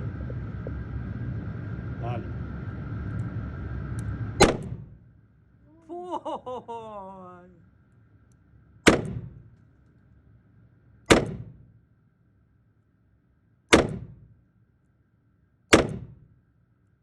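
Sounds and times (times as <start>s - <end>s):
revolver shots: 4.4s - 4.9s, 8.8s - 9.4s, 11.1s - 11.6s, 13.7s - 14.2s, 15.7s - 16.2s.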